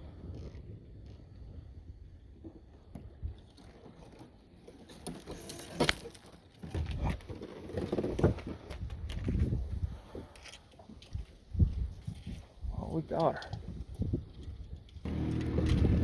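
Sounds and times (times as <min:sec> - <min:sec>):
wind buffeting microphone: 0:08.2 - 0:10.3, 0:11.1 - 0:13.0, 0:13.6 - 0:16.0.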